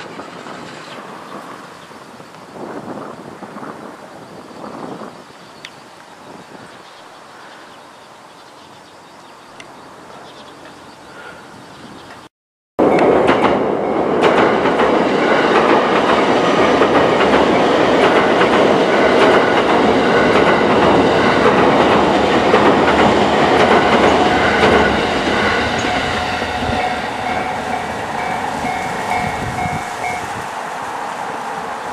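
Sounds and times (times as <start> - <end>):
electric train passing: 0.0 - 5.4, 12.8 - 31.9.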